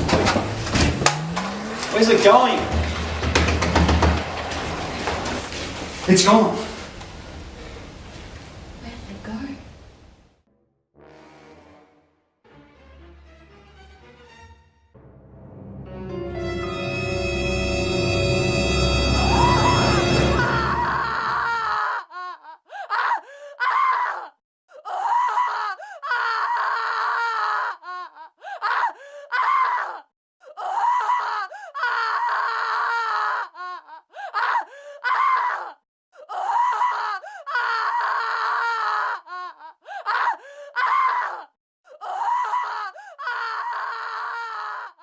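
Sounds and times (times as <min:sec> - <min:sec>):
music: 0:10.5 - 0:21.4.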